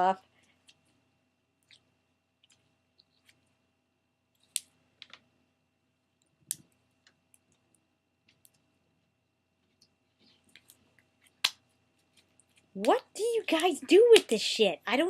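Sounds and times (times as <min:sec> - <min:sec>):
wet clicks and pops: 0:11.4 - 0:11.6.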